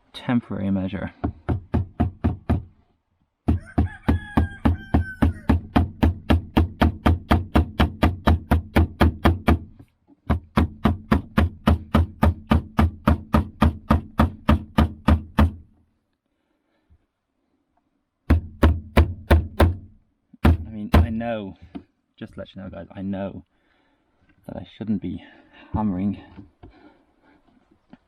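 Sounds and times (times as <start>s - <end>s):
hammer blows on screw in wood: 3.4s - 15.7s.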